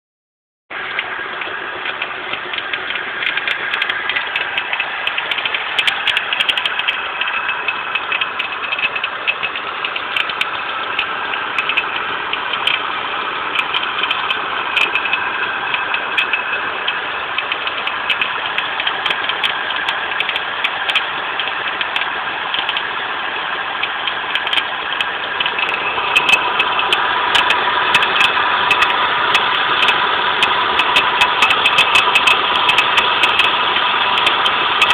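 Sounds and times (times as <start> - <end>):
car engine running: 0.7 - 34.9
idler pulley whine: 0.7 - 34.9.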